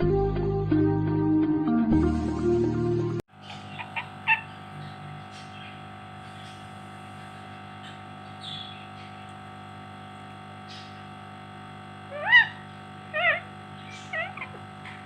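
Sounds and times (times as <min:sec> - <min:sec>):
parrot whistled calls: 0:12.1 - 0:12.6, 0:13.2 - 0:14.5.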